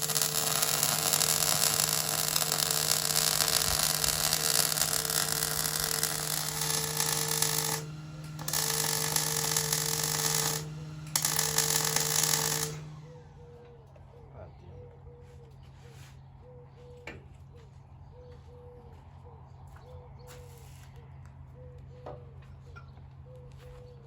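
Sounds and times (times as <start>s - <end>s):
harsh mechanical rasp: 0.0s - 13.0s.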